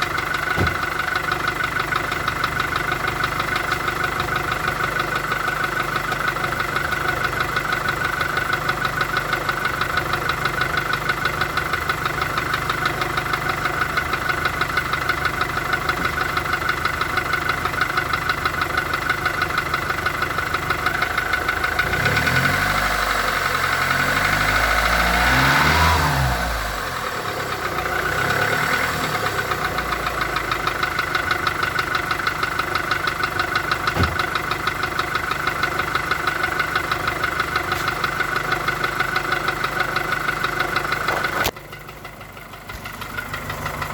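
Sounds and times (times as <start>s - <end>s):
fast engine knock: 0.0s - 4.5s, 29.5s - 43.9s
car engine revving: 21.6s - 30.6s.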